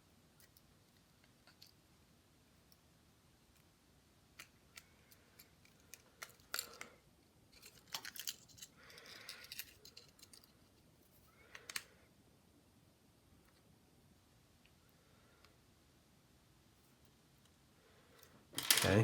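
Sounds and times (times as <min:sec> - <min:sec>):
small tools clicking and tapping: 0:07.5 - 0:10.6.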